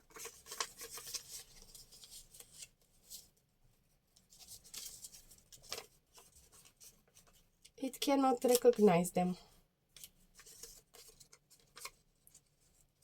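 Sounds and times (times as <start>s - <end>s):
paper rustling and tool clicks: 0.0s - 3.2s, 4.2s - 7.8s, 8.4s - 8.9s, 9.9s - 13.0s.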